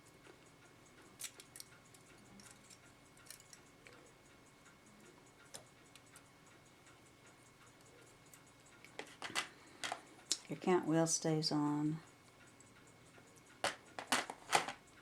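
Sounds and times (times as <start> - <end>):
clicks of small metal clock parts: 1.2 - 4.0.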